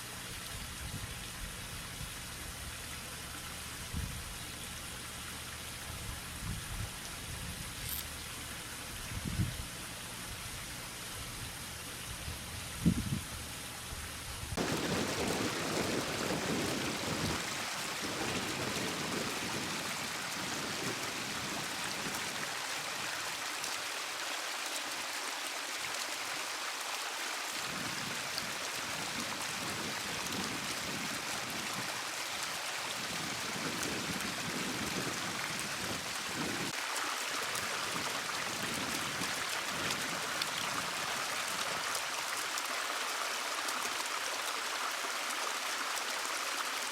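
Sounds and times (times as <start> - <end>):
waterfall splashing: 14.6 - 46.9.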